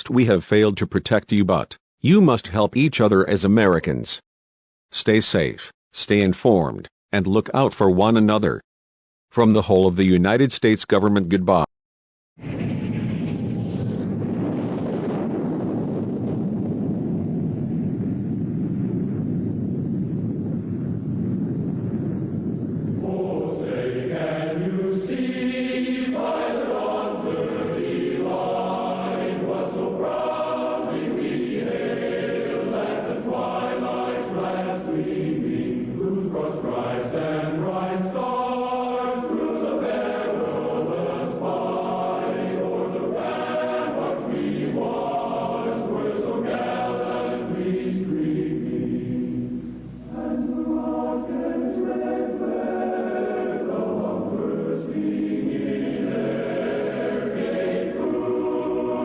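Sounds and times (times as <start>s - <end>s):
choir singing held notes: 23.0s - 59.0s.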